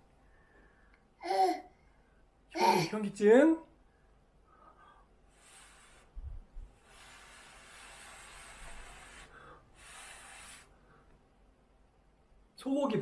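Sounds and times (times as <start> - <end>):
person blowing breathy puffs: 5.3 - 11.0.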